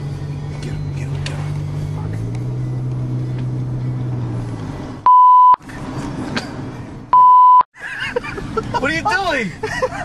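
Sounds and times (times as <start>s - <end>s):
censor bleep: 5.1s - 5.6s, 7.1s - 7.6s.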